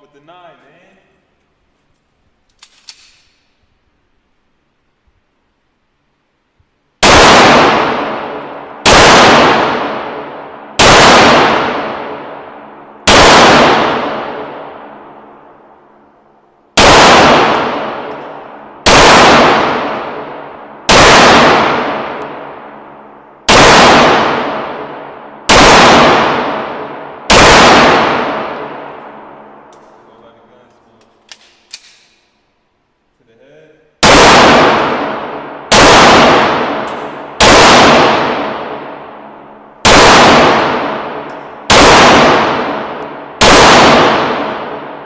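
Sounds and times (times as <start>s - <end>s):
pistol shots: 7.0s - 15.6s, 16.7s - 30.0s, 34.0s - 45.0s.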